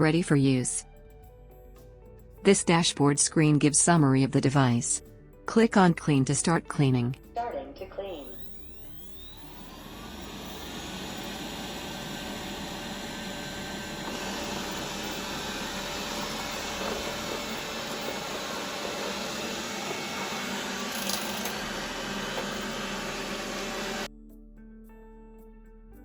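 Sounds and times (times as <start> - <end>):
robot vacuum whirring: 8.1 - 24.1.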